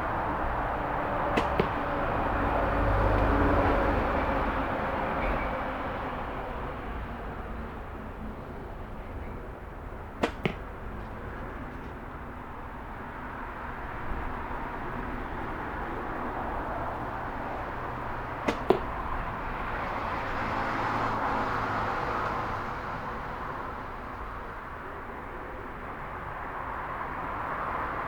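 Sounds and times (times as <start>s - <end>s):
arrow striking target: 1.2s - 3.6s, 10.1s - 11.2s, 18.3s - 19.2s
bow string snapping: 1.3s - 2.0s, 10.2s - 10.8s, 18.5s - 19.0s.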